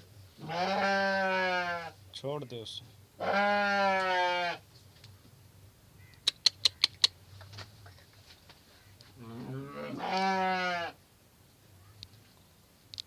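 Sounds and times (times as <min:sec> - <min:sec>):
farm animal bleating: 0:00.4 - 0:02.0, 0:03.2 - 0:04.6, 0:09.2 - 0:11.0
quick sharp clicks: 0:06.1 - 0:07.2.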